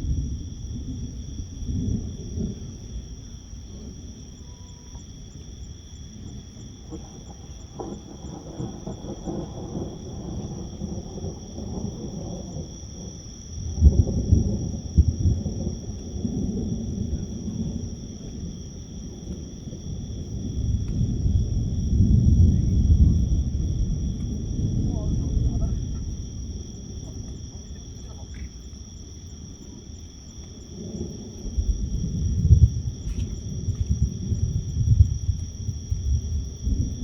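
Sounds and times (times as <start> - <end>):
insects trilling: 0.0 - 37.0
thunder rumbling: 0.0 - 37.0.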